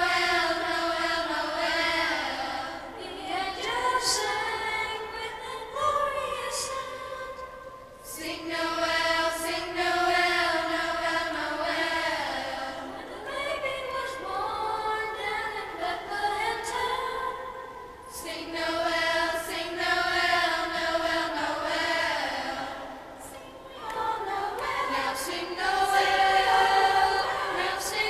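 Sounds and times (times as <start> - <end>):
choir singing slow melody: 0.0 - 28.0.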